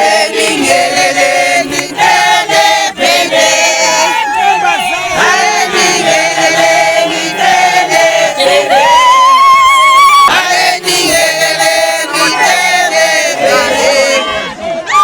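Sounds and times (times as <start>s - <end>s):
group of voices singing: 0.0s - 15.0s.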